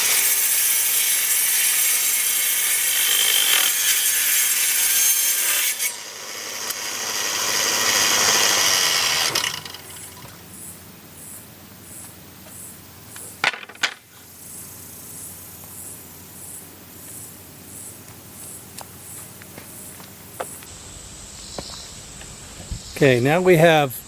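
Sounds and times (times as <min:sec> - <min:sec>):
insects chirping: 0:07.8 - 0:23.6.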